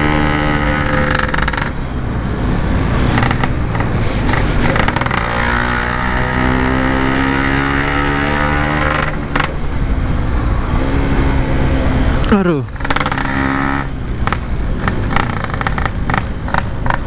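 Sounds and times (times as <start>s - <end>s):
two-stroke motorcycle engine: 0.0s - 2.3s, 11.5s - 17.0s.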